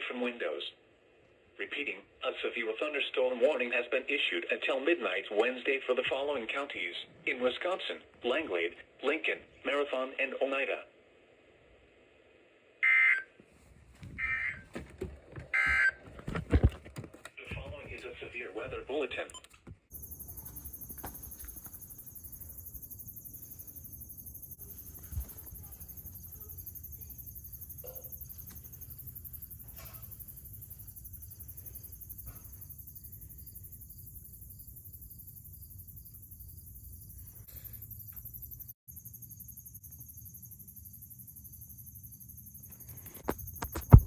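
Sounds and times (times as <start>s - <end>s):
crickets trilling: 19.9s - 44.0s.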